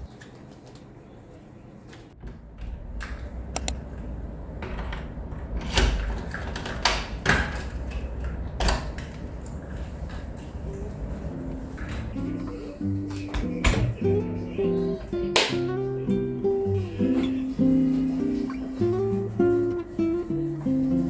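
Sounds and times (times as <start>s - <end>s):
sharp clicks and knocks: 2.2s - 9.6s.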